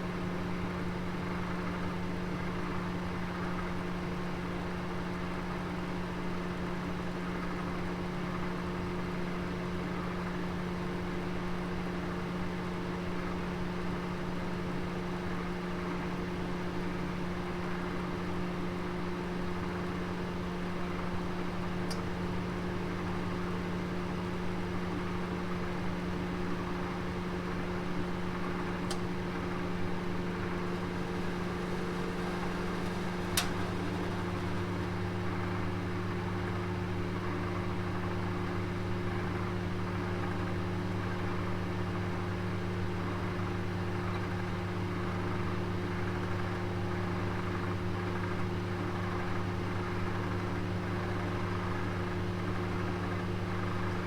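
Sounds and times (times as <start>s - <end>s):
oven humming: 19.1s - 40.3s.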